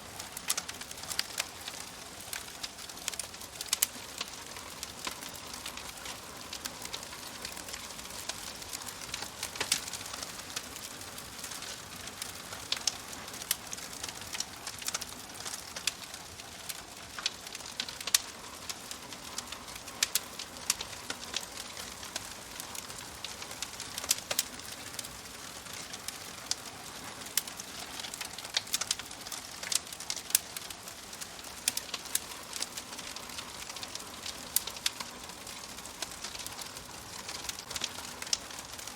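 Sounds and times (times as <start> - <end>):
fire crackling and popping: 0.0 - 38.9.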